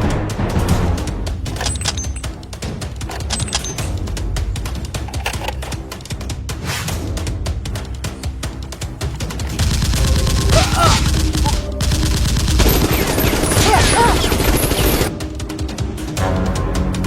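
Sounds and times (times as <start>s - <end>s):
action music score: 0.0s - 17.0s
rapid gunfire: 9.1s - 15.2s.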